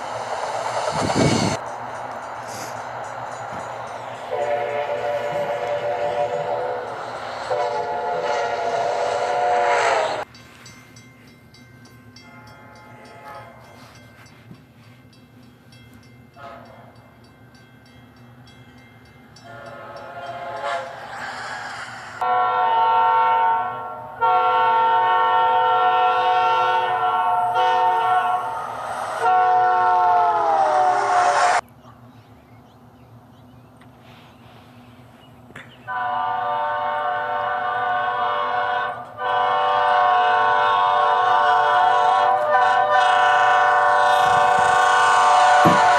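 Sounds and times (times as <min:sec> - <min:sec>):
locomotive air horn blasts: 0:04.3 - 0:10.3, 0:12.3 - 0:13.9, 0:16.4 - 0:16.9, 0:19.4 - 0:21.0, 0:22.2 - 0:31.6, 0:35.9 - 0:45.9.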